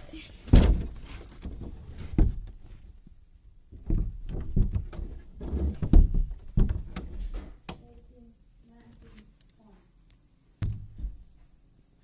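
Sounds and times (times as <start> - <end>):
thumps and knocks: 0.4 - 2.8, 3.7 - 7.8, 10.6 - 11.5.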